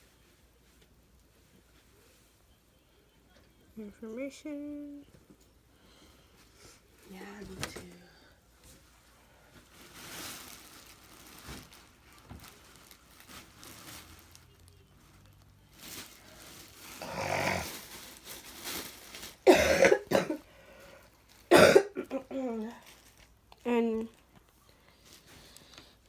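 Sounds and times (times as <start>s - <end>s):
person coughing: 19.4s - 20.4s, 21.5s - 22.6s.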